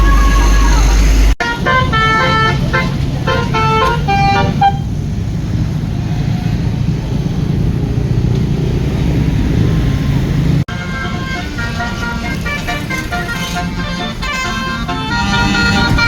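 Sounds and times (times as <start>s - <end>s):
multi-tone musical air horn: 0.0s - 5.0s, 10.7s - 16.0s
engine and traffic rumble: 0.0s - 16.0s.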